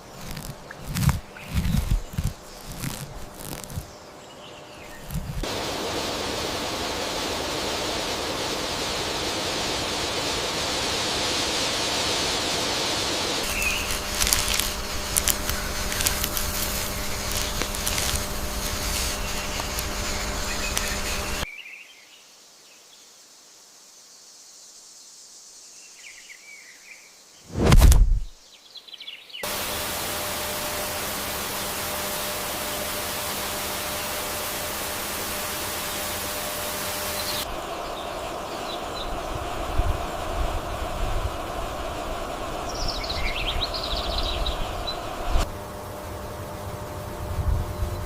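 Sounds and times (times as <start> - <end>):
even hiss of noise: 0.0 - 48.0
scattered clicks: 13.4 - 21.4
low steady hum: 29.4 - 48.0.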